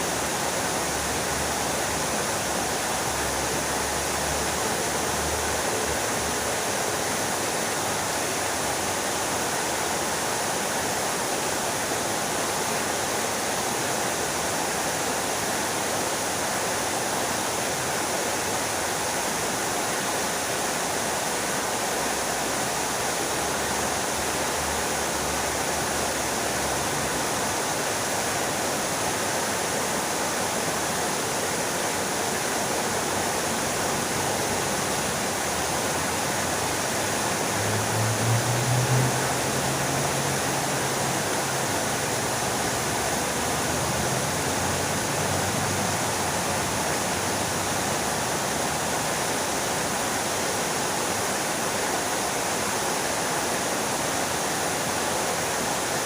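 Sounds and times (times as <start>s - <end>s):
fountain water splashing: 0.0s - 56.0s.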